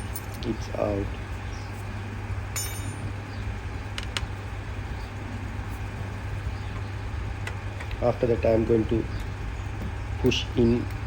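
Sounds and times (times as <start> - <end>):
metallic clink: 2.5 - 3.2.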